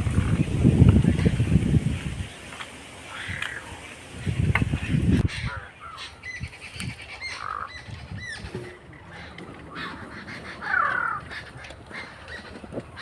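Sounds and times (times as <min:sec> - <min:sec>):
birds chirping: 0:00.0 - 0:13.0
bird squawk: 0:03.1 - 0:13.0.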